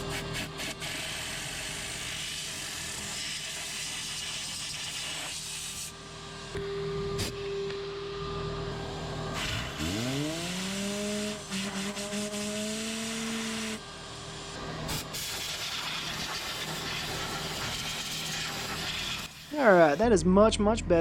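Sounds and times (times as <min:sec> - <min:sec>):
compressed air hissing blasts: 0:00.0 - 0:05.9, 0:09.4 - 0:13.8, 0:14.9 - 0:20.1
shop vacuum running: 0:00.0 - 0:21.0
motor whine: 0:06.0 - 0:15.2.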